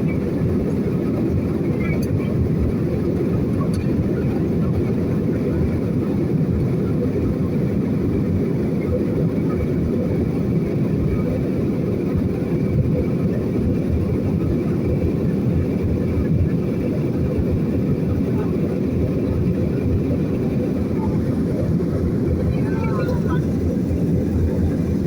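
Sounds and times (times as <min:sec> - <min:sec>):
airliner cabin engine rumble: 0:00.0 - 0:25.0.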